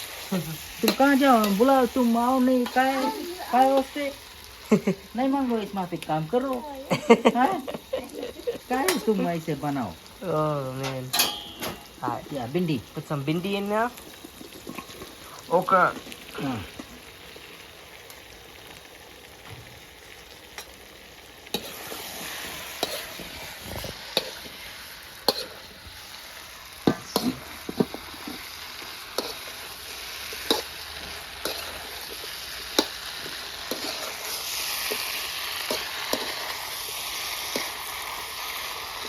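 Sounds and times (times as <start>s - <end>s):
okra sizzling in a pan: 0.0s - 39.0s
utensil scraping a pan: 32.8s - 35.0s.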